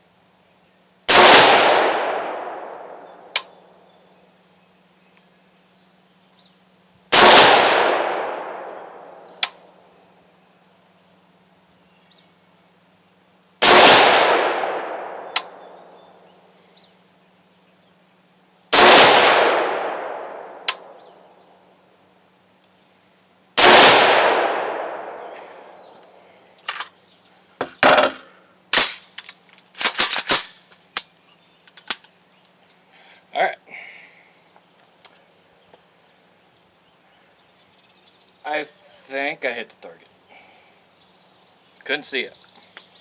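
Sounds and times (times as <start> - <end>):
rifle shots with echo: 1.1 - 3.6, 7.1 - 9.6, 13.6 - 16.0, 18.7 - 21.2, 23.6 - 26.0.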